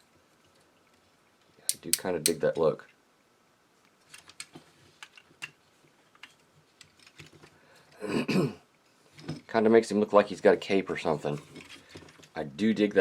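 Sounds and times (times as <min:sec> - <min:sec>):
plastic toy parts clicking: 0:01.7 - 0:02.4.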